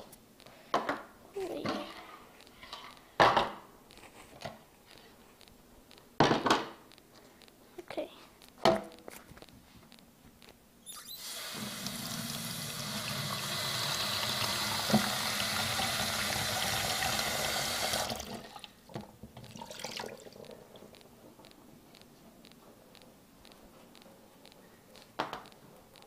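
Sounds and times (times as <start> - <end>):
tap water running into bowl: 11.2 - 20.6.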